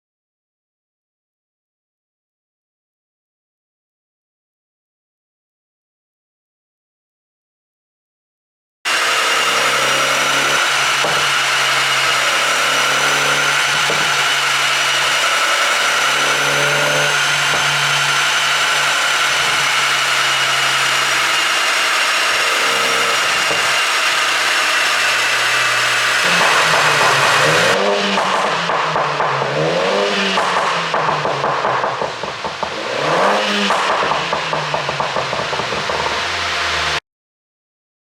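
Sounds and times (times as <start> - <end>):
car engine running: 8.9 - 37.0.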